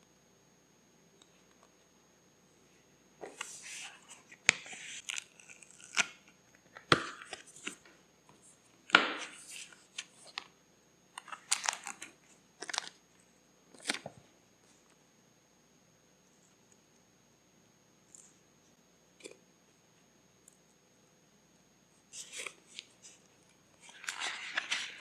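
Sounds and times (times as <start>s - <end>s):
paper rustling and tearing: 23.8s - 25.0s.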